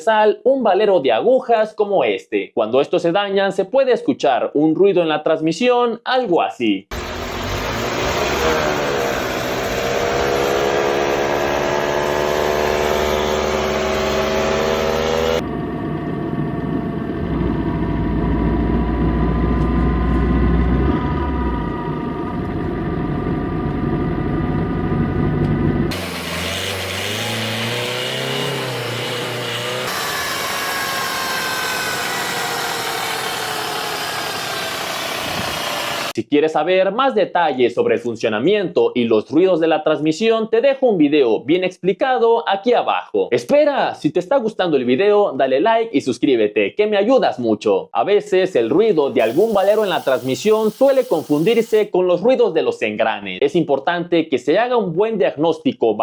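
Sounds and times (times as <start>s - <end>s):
transmission whine: 6.9s - 27.0s, 48.7s - 51.9s
rushing noise: 48.8s - 51.9s.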